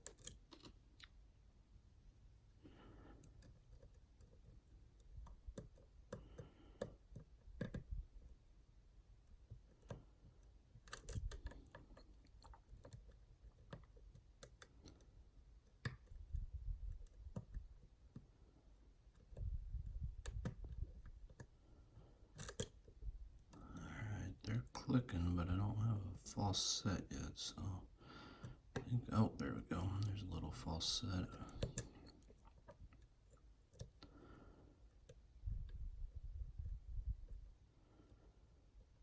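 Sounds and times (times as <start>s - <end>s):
lock pick clicking on pins: 0.0s - 0.8s, 3.2s - 8.3s, 9.2s - 18.3s, 19.0s - 21.6s, 22.3s - 23.8s, 31.0s - 34.1s.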